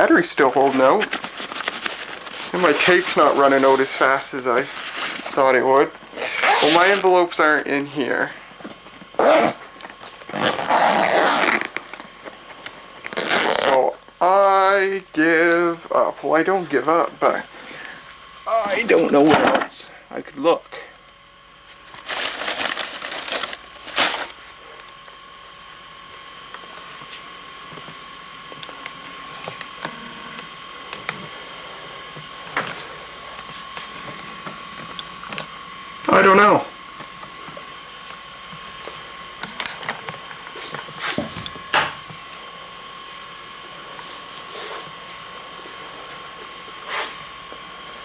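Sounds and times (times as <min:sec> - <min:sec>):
faint high hum: 0:00.0 - 0:48.0
papers rustling and crinkling: 0:00.4 - 0:05.4, 0:21.6 - 0:24.4.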